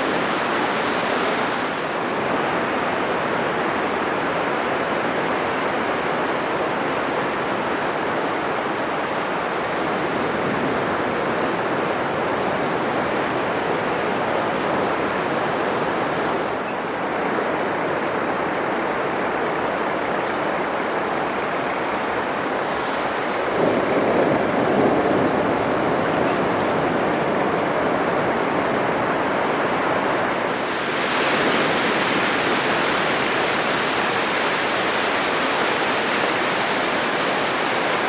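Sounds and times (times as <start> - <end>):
surf breaking on beach: 14.8 - 38.0.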